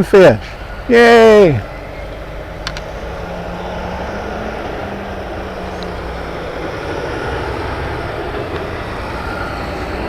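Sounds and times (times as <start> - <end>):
traffic rumble: 0.0 - 10.0
trucks going by: 0.0 - 10.0.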